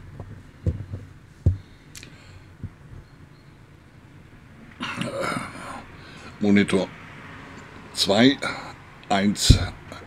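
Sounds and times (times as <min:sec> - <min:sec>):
short dull knocks: 0:00.0 - 0:01.8, 0:02.6 - 0:03.0, 0:09.4 - 0:10.0.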